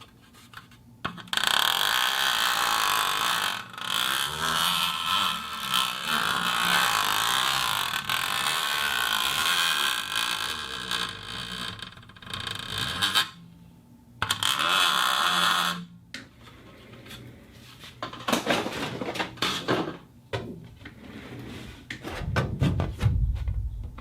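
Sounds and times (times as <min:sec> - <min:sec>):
plastic cup crinkling scrape: 0:20.9 - 0:22.1
dull low knocks: 0:22.1 - 0:24.0.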